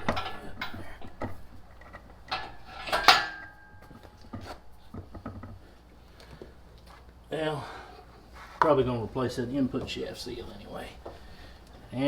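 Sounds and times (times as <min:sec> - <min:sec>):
metal parts and tools clanking: 0:00.0 - 0:05.5
loud ringing metal clank: 0:02.3 - 0:04.1.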